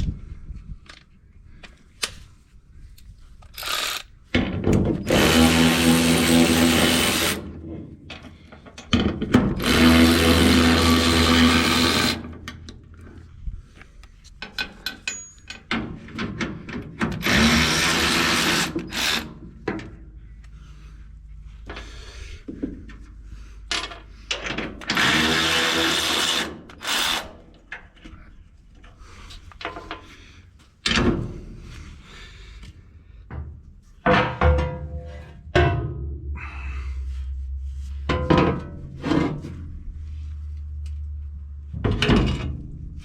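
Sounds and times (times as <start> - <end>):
hand tool clicks and clanks: 3.0 - 5.4, 13.8 - 20.6
power tool running: 5.1 - 7.5, 9.6 - 12.4, 17.2 - 19.3, 24.9 - 27.3.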